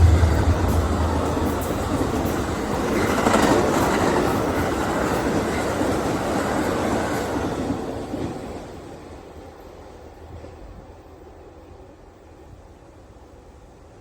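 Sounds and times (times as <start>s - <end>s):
train cars rolling past: 0.0s - 8.9s.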